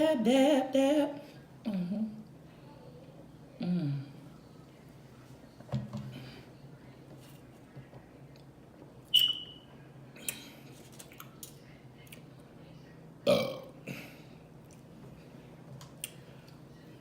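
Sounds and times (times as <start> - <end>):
woman burping: 13.3 - 14.1.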